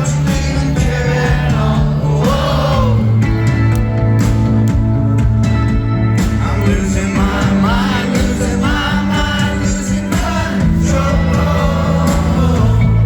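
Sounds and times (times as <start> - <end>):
lead singer singing: 0.0 - 3.6, 6.2 - 13.0
live rock band playing: 0.0 - 13.0.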